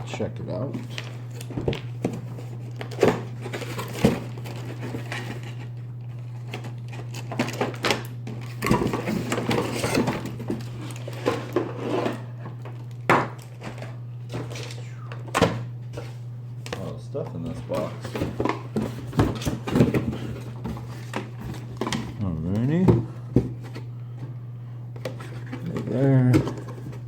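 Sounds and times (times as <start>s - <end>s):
steady low hum: 0.0s - 27.0s
packaging rustling and rattling: 0.8s - 14.8s.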